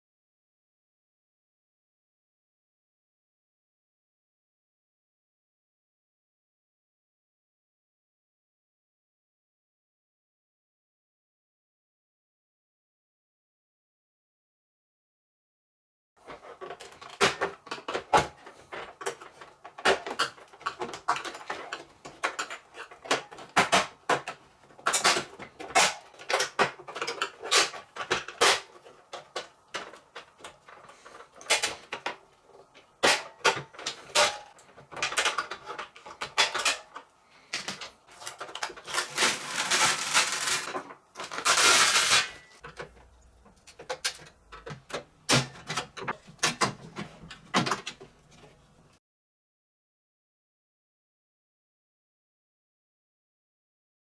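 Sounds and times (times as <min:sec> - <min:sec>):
hard parts clicking and clattering: 0:16.2 - 0:48.6
scraping noises: 0:37.6 - 0:42.6.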